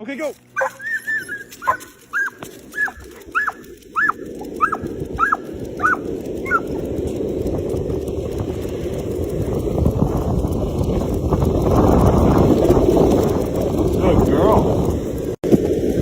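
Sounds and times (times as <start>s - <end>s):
dog yipping: 0.6s - 6.8s.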